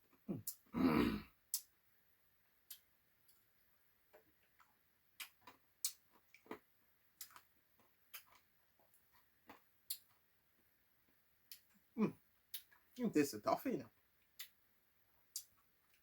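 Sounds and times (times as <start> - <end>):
eating clicks and mouth smacks: 0.3 - 0.7, 1.5 - 1.7, 2.7 - 3.4, 4.5 - 6.6, 7.2 - 10.2, 11.5 - 11.8, 12.5 - 12.9, 14.2 - 14.6, 15.3 - 16.0.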